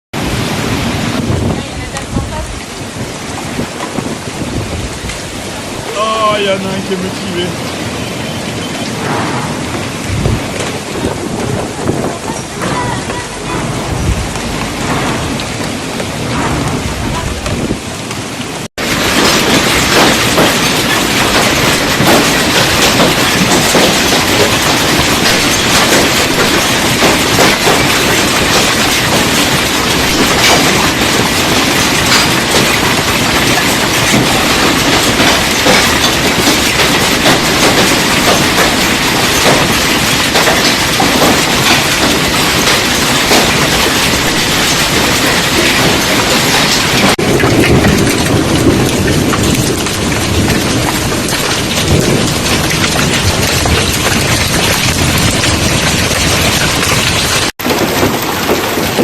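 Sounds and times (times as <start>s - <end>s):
hailstones clattering on hard surfaces: 18.8s - 59.0s.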